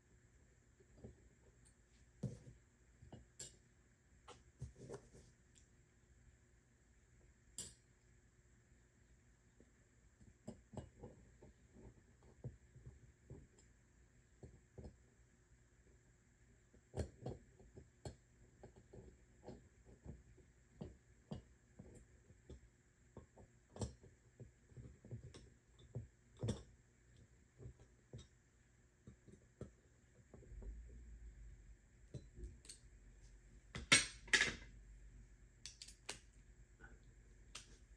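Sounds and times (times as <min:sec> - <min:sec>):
clicks of metal bike parts: 0:33.8 - 0:34.7, 0:35.6 - 0:36.3.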